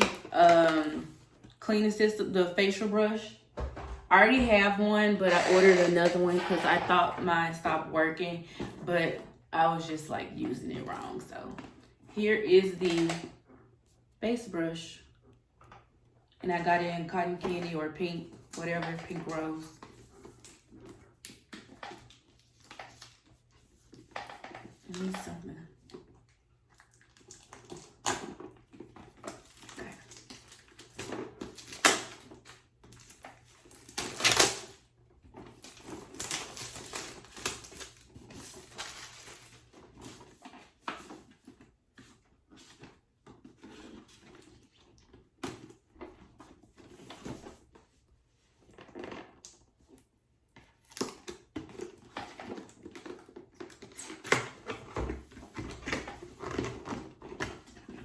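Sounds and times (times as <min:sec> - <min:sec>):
packaging rustling and crinkling: 0:26.9 - 0:47.9.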